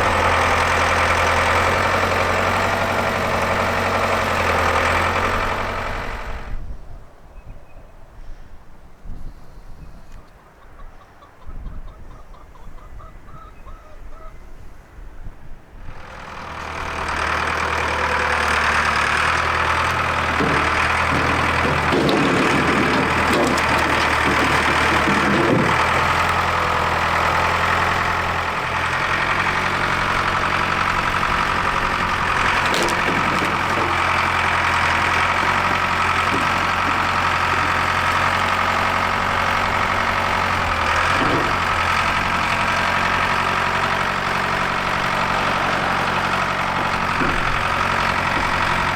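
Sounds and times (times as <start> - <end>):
engine running steadily: 0.0 - 6.6, 15.8 - 48.9
knocks and clunks: 16.5 - 48.9.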